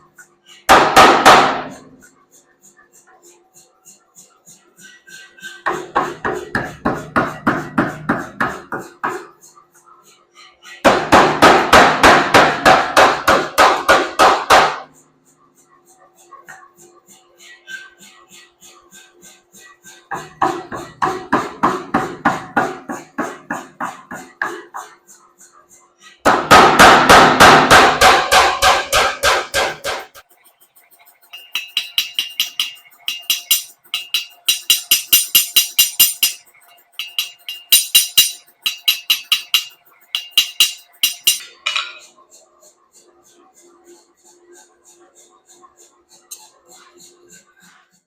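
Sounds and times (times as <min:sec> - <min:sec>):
hammer striking anvil: 0:00.7 - 0:01.8, 0:26.3 - 0:30.1, 0:31.4 - 0:42.0.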